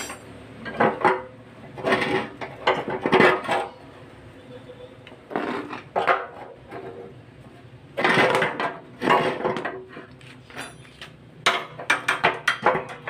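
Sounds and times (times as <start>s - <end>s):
metal tools clinking: 0.0s - 0.3s, 10.4s - 11.1s.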